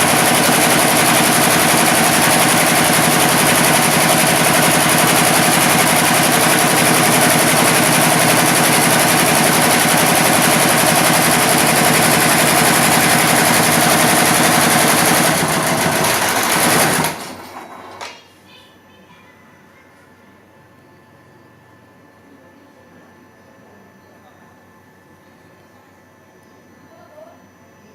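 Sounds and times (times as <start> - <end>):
embroidery machine stitching: 0.0 - 18.0.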